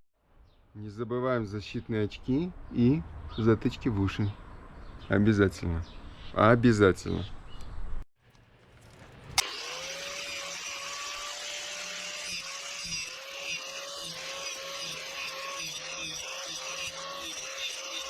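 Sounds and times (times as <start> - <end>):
angle grinder cutting metal: 8.2 - 18.0
angle grinder switch click: 8.3 - 9.8.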